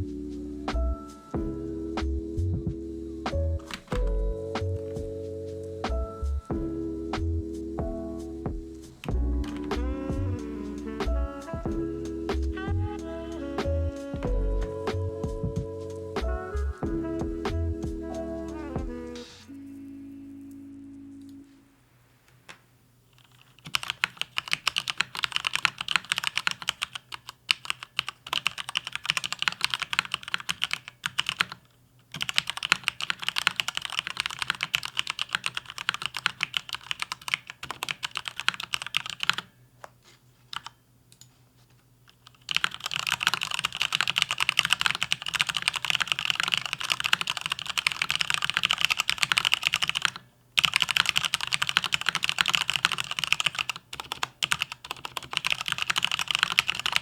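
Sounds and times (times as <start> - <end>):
mechanical keyboard typing: 3.6 - 4.1, 23.1 - 39.5, 40.5 - 41.3, 42.1 - 57.0.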